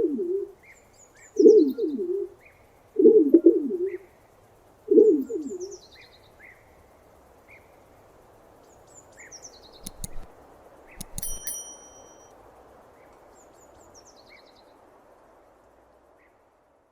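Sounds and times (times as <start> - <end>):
sharp clicks: 9.8 - 12.3
brief high ringing tone: 11.0 - 12.3.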